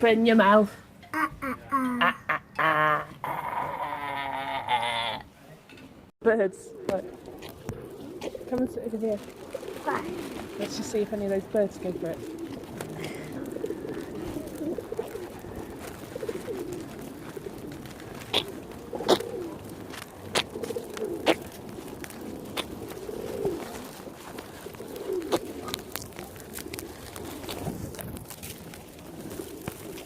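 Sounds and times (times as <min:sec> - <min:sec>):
pigeons cooing: 0:06.6 - 0:30.0.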